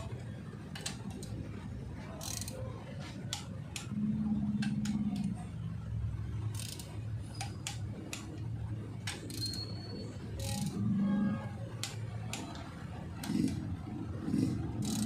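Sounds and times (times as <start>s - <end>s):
steady low hum: 0.0s - 15.0s
ratchet wrench clicking: 0.7s - 1.4s, 2.1s - 2.7s, 6.5s - 8.4s, 9.0s - 10.8s, 14.4s - 15.0s.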